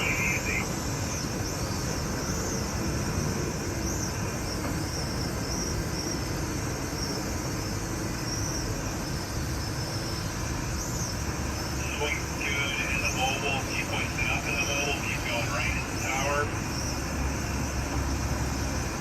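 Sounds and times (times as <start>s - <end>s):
crane machinery rumbling: 10.4s - 19.0s.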